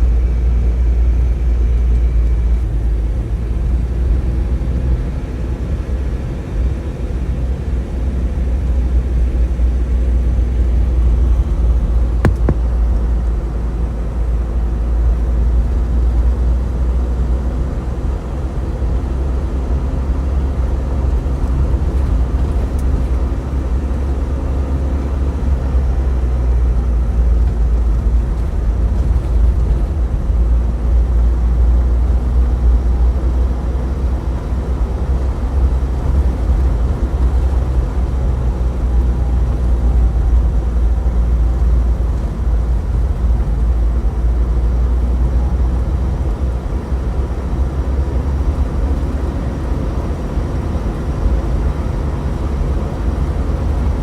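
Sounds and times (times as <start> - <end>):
loud low rumble: 8.0 - 15.8.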